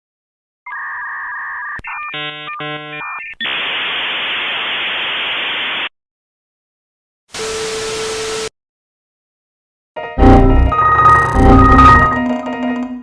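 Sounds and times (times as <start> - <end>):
steady modem tones: 0.7 - 4.8
static hiss: 3.4 - 5.9, 7.4 - 8.5.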